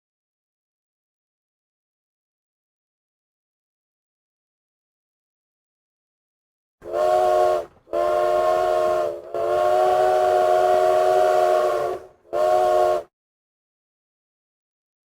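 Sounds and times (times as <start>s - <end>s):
train whistle chord blasts: 6.8s - 13.1s.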